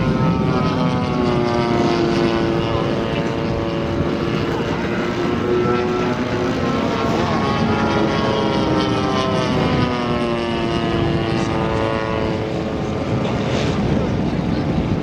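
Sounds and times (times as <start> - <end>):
model plane engine and propeller: 0.0 - 15.0.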